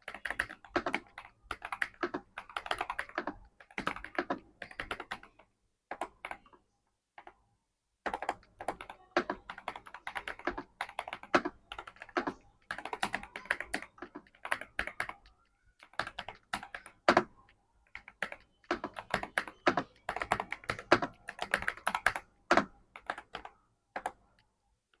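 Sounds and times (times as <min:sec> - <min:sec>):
typing on mechanical keyboard: 0:00.0 - 0:06.6, 0:07.2 - 0:07.4, 0:08.0 - 0:25.0.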